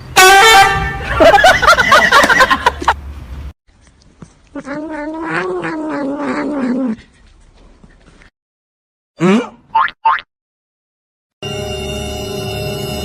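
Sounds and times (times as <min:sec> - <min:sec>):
cat yowling: 0:04.6 - 0:07.0.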